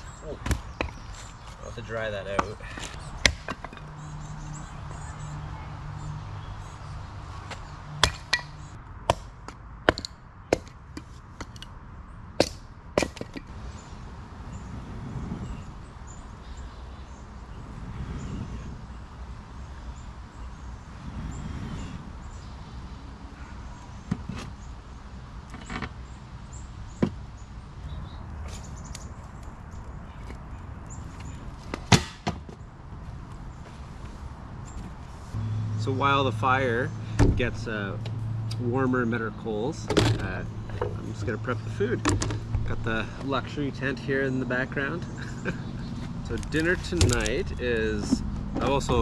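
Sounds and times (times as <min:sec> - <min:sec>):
axe chopping firewood: 0:00.4 - 0:01.3, 0:02.3 - 0:03.9, 0:07.5 - 0:11.6, 0:12.4 - 0:13.5, 0:31.8 - 0:32.5.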